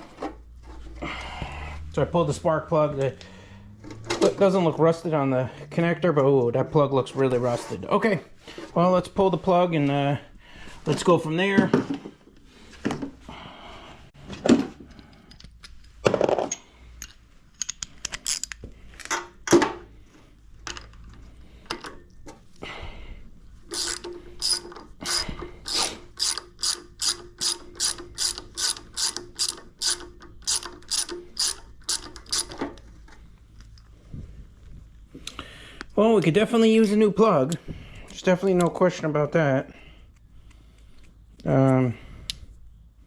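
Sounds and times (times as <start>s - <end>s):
tools being handled: 15.1s - 19.4s, 23.7s - 33.9s
ratchet wrench clicking: 23.7s - 32.6s.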